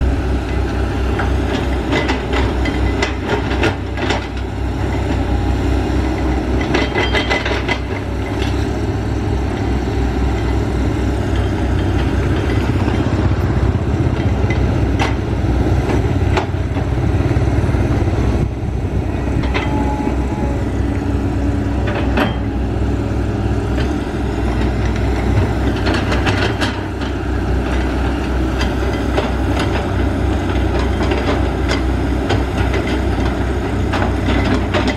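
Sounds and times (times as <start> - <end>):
excavator diesel engine running: 0.0 - 34.9
sharp metal clanks and knocks: 6.2 - 8.6, 19.2 - 20.3, 21.8 - 22.6.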